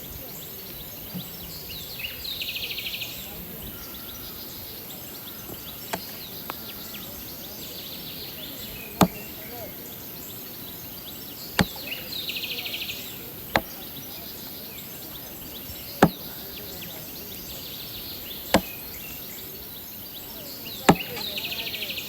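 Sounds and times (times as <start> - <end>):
sharp knocks: 11.6 - 11.9, 16.0 - 16.4, 18.5 - 18.8.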